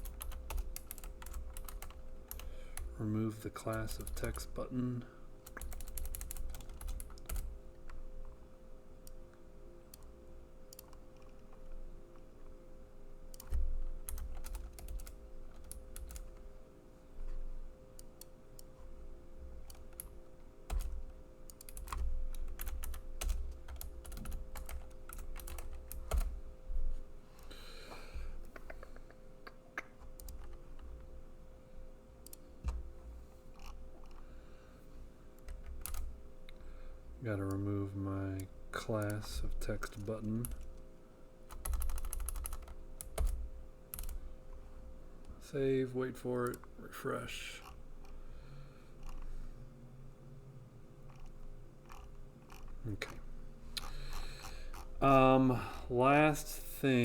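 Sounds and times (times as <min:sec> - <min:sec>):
keyboard typing: 0:00.0 - 0:03.0, 0:03.6 - 0:04.6, 0:05.4 - 0:08.0, 0:13.3 - 0:16.5, 0:19.6 - 0:26.4, 0:29.8 - 0:31.1, 0:35.4 - 0:36.2, 0:38.4 - 0:40.8, 0:41.5 - 0:44.2, 0:51.1 - 0:53.2
faint steady hum: 0:00.0 - 0:57.0.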